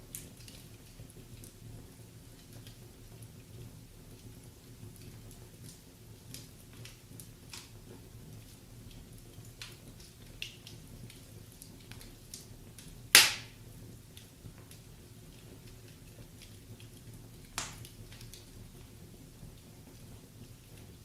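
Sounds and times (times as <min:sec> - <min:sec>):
wood fire crackling: 0:00.0 - 0:21.0
loud pop from fire: 0:13.1 - 0:13.6, 0:17.6 - 0:17.9.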